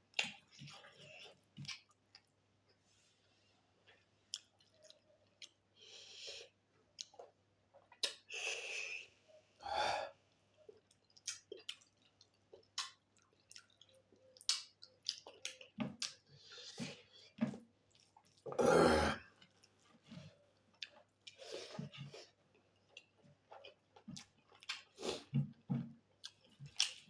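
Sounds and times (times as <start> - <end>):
person chewing: 0.1 - 2.8, 3.9 - 8.3, 10.6 - 25.4, 26.2 - 27.0
wet mouth clicks and smacks: 7.9 - 8.2, 11.1 - 16.2.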